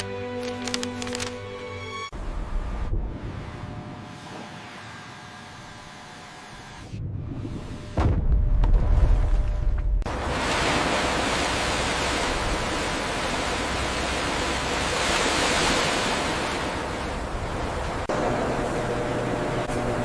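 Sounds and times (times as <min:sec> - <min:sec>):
deep low rumble: 0:02.2 - 0:04.0
rushing water: 0:10.1 - 0:18.2.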